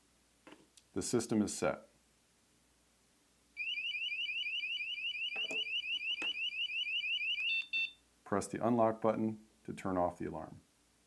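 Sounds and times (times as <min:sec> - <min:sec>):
alarm siren of rising chirps: 0:03.6 - 0:07.9.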